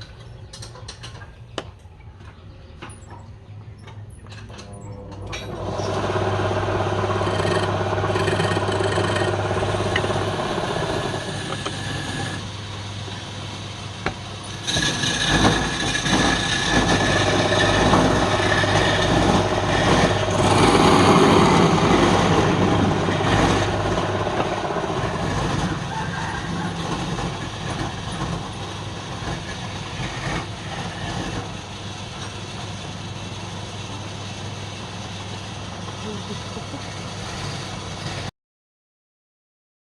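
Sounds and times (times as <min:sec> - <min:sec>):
wood lathe motor hum: 0:05.2 - 0:32.7, 0:35.9 - 0:38.3
tool working spinning wood: 0:05.2 - 0:38.3.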